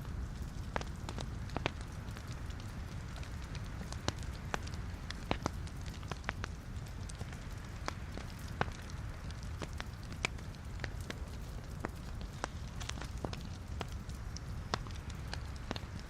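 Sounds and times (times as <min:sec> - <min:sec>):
fire crackles and pops: 0:00.0 - 0:16.0
fire rumbling and hissing: 0:00.0 - 0:16.0.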